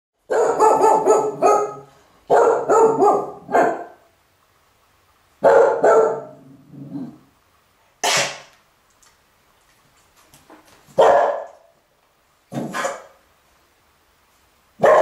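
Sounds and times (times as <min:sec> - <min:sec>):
dog barking: 0:00.3 - 0:04.1, 0:05.4 - 0:06.4, 0:11.0 - 0:11.7, 0:12.5 - 0:13.2, 0:14.8 - 0:15.0.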